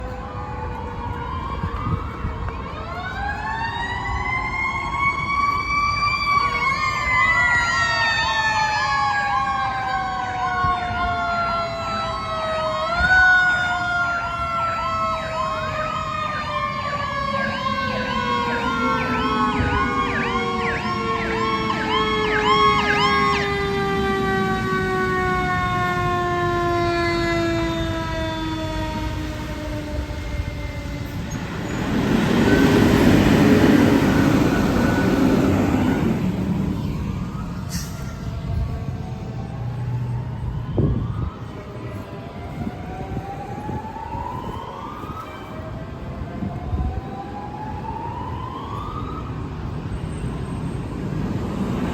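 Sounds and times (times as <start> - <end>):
siren wailing: 0.0 - 51.9
siren fast yelp: 1.1 - 31.8
diesel engine and tyre rumble: 27.8 - 51.9.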